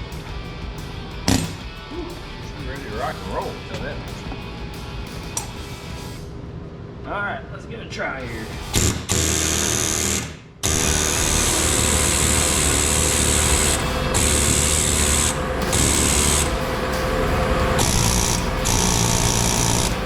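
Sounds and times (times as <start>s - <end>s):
pneumatic air hammer: 1.3s - 1.7s, 8.6s - 20.0s.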